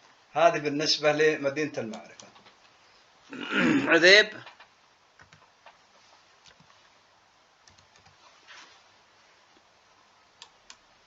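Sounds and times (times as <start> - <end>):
keyboard and mouse clicks: 4.4 - 5.8, 7.6 - 8.2.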